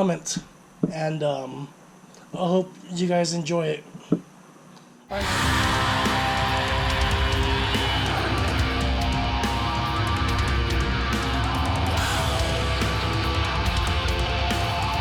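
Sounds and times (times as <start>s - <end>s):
heavy metal music: 5.1s - 15.0s.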